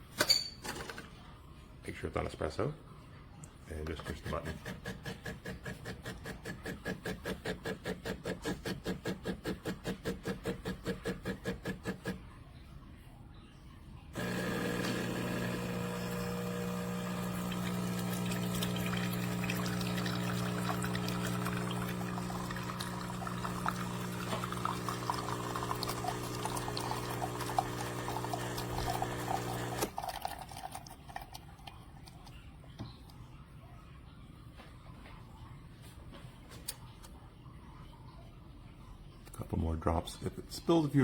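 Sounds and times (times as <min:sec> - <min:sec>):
espresso machine pump humming: 0:04.3 - 0:12.2, 0:14.2 - 0:30.0
espresso pouring into mug: 0:14.2 - 0:32.2.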